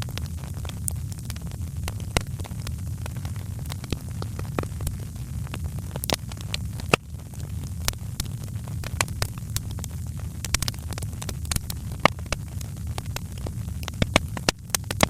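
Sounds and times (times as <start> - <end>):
low rumble of flame: 0.0 - 15.0
wood fire crackling: 0.0 - 15.0.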